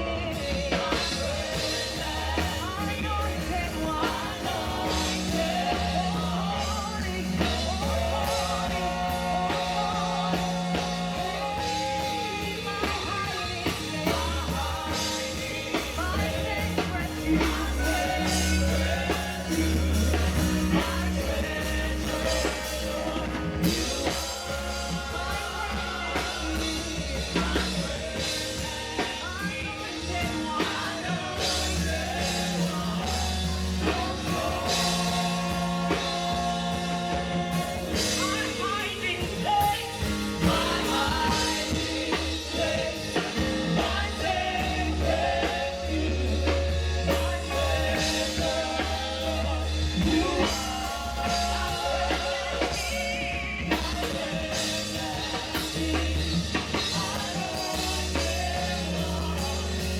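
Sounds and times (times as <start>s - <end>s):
live band playing: 0.0s - 59.9s
low bass notes: 0.0s - 59.9s
people singing worship song: 0.0s - 59.9s.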